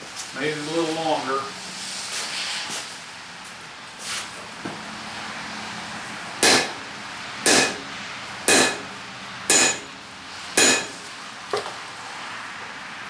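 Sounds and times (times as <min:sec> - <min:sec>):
steady hiss: 0:00.0 - 0:03.3
hammer striking steel on anvil: 0:06.4 - 0:06.8, 0:07.4 - 0:07.9, 0:08.5 - 0:08.9, 0:09.5 - 0:10.0, 0:10.6 - 0:11.0.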